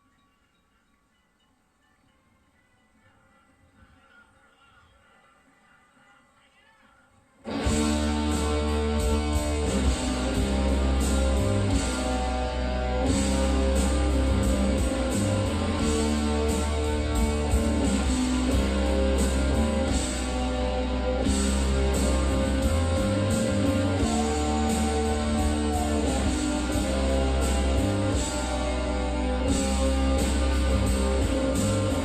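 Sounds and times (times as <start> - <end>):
rock music with guitar: 7.5 - 32.0
steady drum beat: 7.5 - 32.0.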